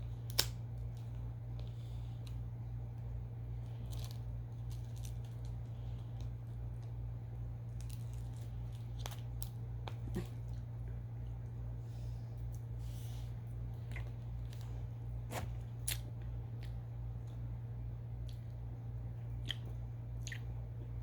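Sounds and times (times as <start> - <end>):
low electrical hum: 0.0 - 21.0
person chewing gummy candy: 13.7 - 14.7, 19.3 - 20.9.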